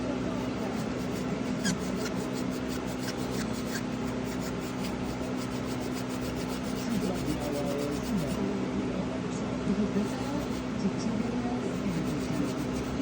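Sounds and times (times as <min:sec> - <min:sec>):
steady low hum: 0:00.0 - 0:13.0
abrasive pad scrubbing metal: 0:00.3 - 0:08.4, 0:10.0 - 0:10.7, 0:11.6 - 0:13.0.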